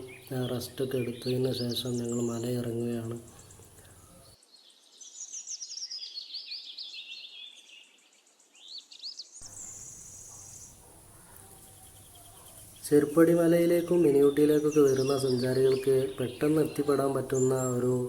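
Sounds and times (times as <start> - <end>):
insect buzzing trill: 9.4 - 10.8
songbird trilling: 9.4 - 18.0.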